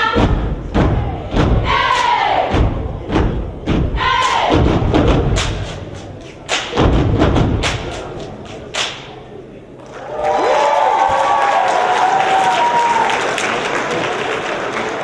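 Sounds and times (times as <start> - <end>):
stomping and clapping: 4.1 - 9.2.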